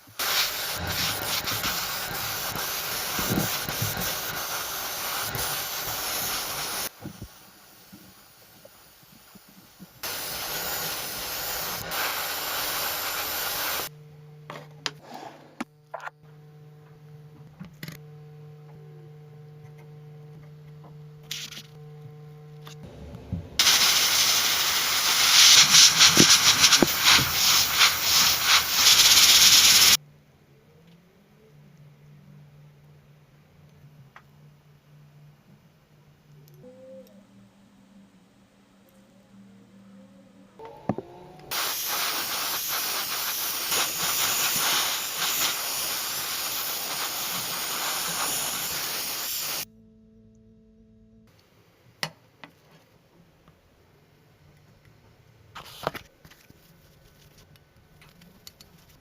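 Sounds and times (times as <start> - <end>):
loud pressurised hiss: 0.0 - 13.9, 23.6 - 30.0, 41.5 - 49.7.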